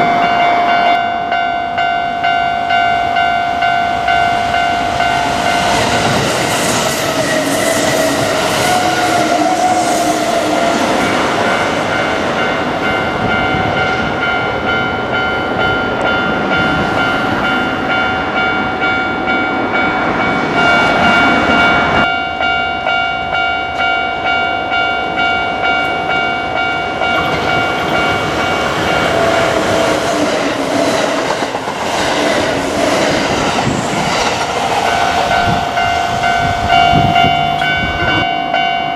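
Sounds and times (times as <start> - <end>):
crossing warning bell ringing: 0.0 - 38.9.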